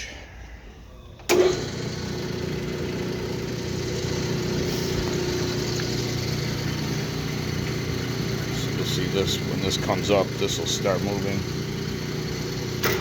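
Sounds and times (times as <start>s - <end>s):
lathe motor humming: 1.3s - 13.0s.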